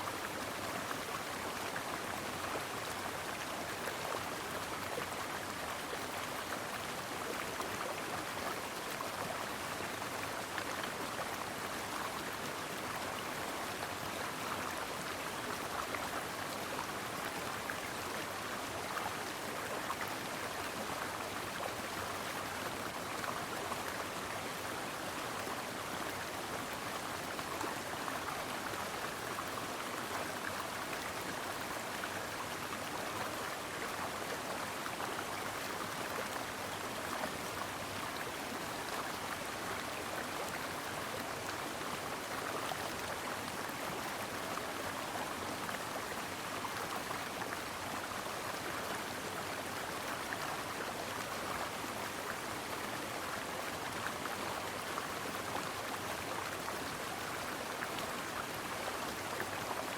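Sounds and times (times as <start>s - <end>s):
brook flowing: 0.0s - 59.9s.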